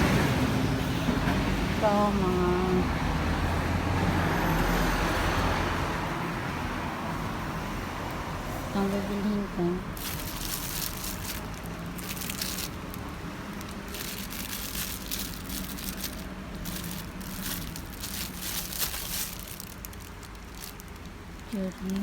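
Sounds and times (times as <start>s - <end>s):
plastic crinkling and rustling: 9.8s - 22.0s.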